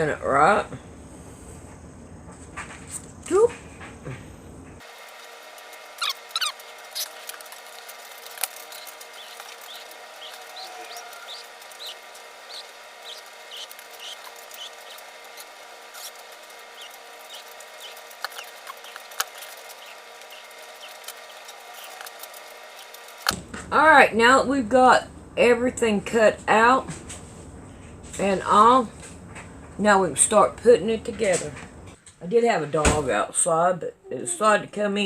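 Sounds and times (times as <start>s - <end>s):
scissors cutting: 5.6s - 23.4s.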